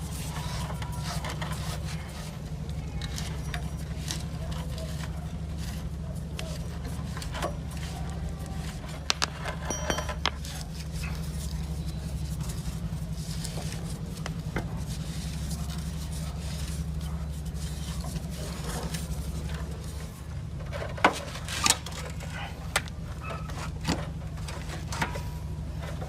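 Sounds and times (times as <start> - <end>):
low machine hum: 0.0 - 26.0
hard objects clinking: 8.5 - 11.3.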